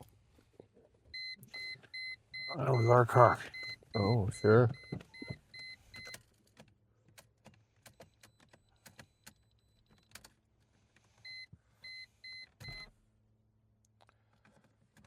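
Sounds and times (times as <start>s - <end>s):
short high warning beeps: 1.2s - 5.8s.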